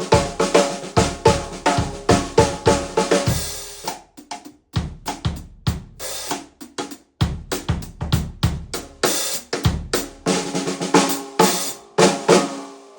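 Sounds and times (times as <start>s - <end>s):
cymbals: 0.0s - 4.0s, 9.0s - 12.9s
snare drum strokes: 0.0s - 5.4s, 8.8s - 12.8s
kick drum: 0.1s - 3.6s, 4.8s - 6.0s, 7.2s - 8.9s, 9.6s - 10.2s.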